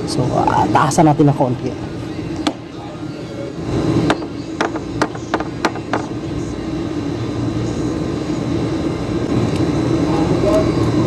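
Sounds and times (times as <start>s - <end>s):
air conditioner unit humming: 0.0s - 11.0s.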